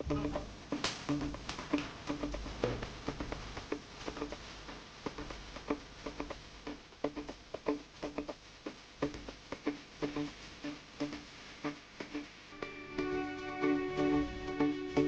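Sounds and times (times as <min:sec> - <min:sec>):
plucked guitar music: 0:00.0 - 0:03.4, 0:12.1 - 0:15.0.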